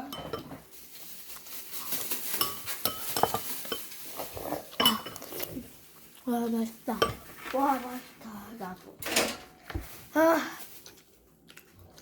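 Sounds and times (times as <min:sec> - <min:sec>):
cutlery clinking against a bowl: 0:00.0 - 0:00.6, 0:02.3 - 0:05.5, 0:07.0 - 0:07.4.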